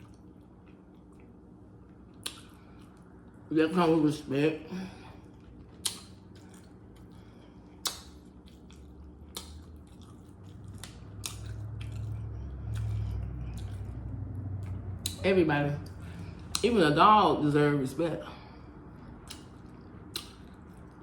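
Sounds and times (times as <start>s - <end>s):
eating crunches and clicks: 2.1s - 3.1s, 5.2s - 15.2s, 19.0s - 21.0s
low rumble: 10.3s - 17.7s.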